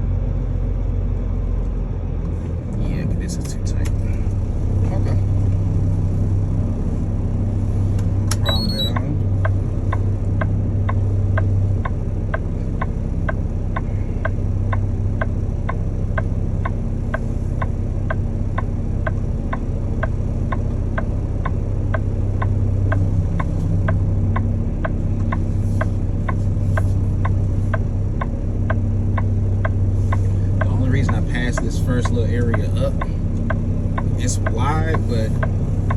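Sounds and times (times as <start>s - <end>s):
diesel engine hum: 0.0s - 35.9s
indicator flasher ticking: 26.2s - 35.9s.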